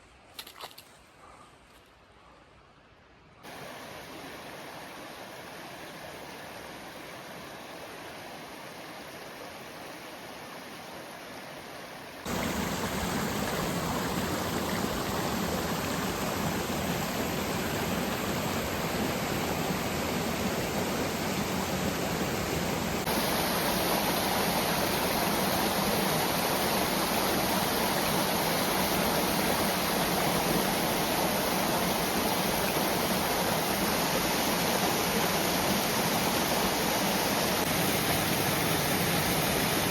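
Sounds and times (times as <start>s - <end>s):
waterfall rushing: 12.3s - 39.9s.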